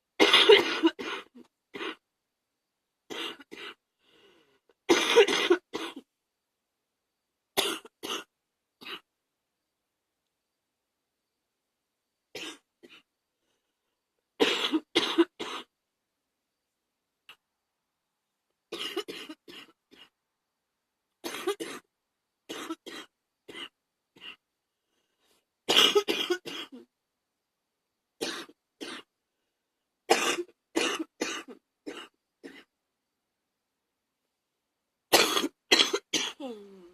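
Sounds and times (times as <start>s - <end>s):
woman coughing: 0.2s - 2.0s, 4.9s - 6.0s, 25.7s - 26.7s, 30.1s - 32.7s, 35.1s - 36.7s.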